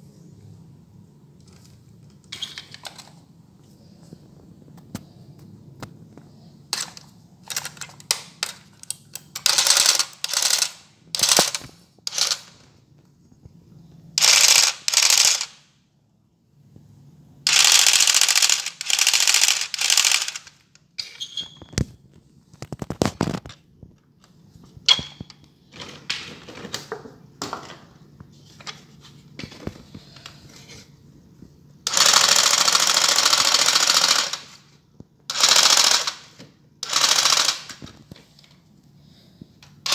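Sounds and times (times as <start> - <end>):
toy jigsaw buzzing: 9.4 - 12.5, 14.2 - 15.6, 17.5 - 20.6, 31.9 - 34.6, 35.3 - 37.9.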